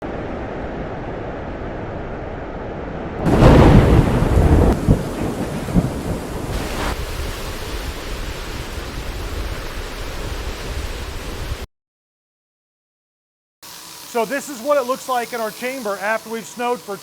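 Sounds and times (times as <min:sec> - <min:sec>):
thunder clap rumbling: 0:00.0 - 0:11.6
steady rain: 0:03.2 - 0:11.7, 0:13.6 - 0:17.0.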